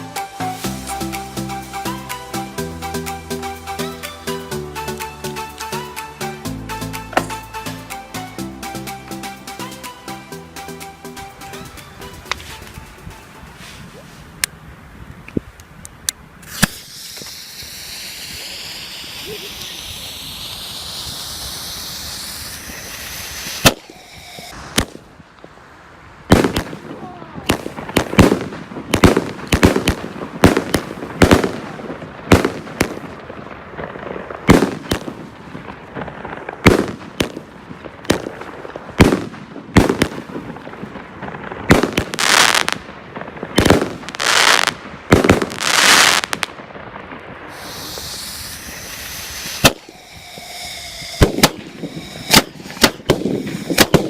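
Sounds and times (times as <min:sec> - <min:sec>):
firework hissing: 0:00.0 - 0:07.9, 0:16.3 - 0:25.2, 0:26.0 - 0:46.6, 0:47.3 - 0:54.0
hissing crackling firework bursts: 0:00.0 - 0:54.0
firework bangs: 0:16.4 - 0:25.6, 0:26.2 - 0:54.0.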